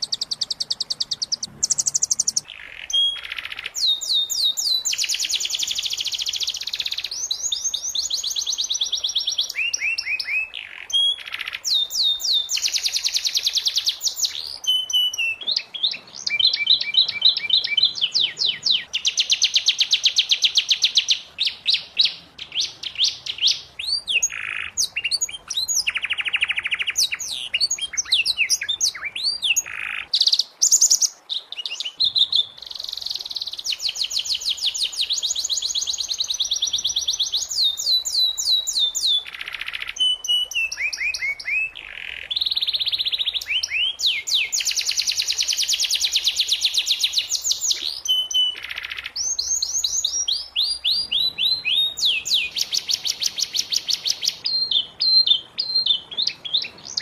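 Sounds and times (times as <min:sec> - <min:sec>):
canary singing trills: 0:00.0 - 0:57.0.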